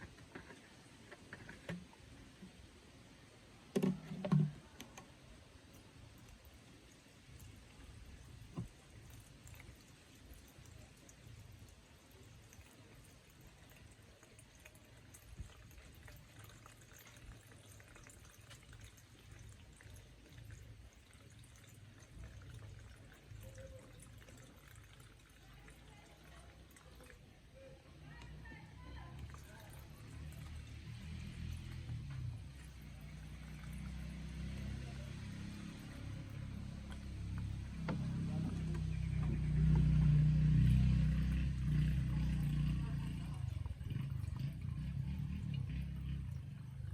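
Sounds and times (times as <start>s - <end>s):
engine running hum: 28.4s - 46.9s.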